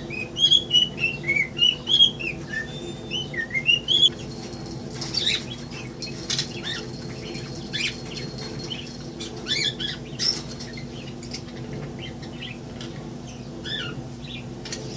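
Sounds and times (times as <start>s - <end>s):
steady low hum: 0.0s - 14.9s
budgerigar chirps and squeaks: 13.6s - 14.4s.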